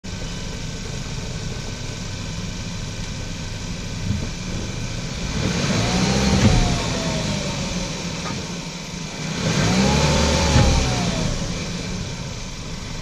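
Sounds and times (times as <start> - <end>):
car engine humming: 0.0 - 13.0
dull low clunk: 4.0 - 4.8, 6.3 - 7.0.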